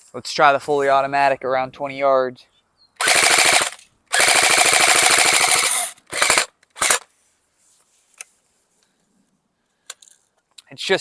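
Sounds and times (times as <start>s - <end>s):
airsoft gun automatic bursts: 3.0s - 7.1s.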